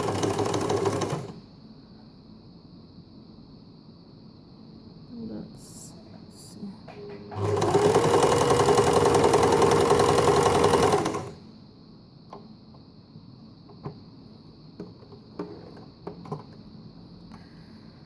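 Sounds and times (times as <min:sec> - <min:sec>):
sewing machine running: 0:00.0 - 0:01.4, 0:07.3 - 0:11.4.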